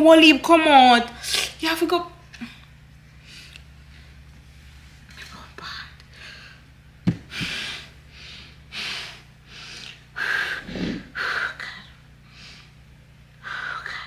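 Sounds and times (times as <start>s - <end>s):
woman gasping and puffing: 10.3s - 11.2s.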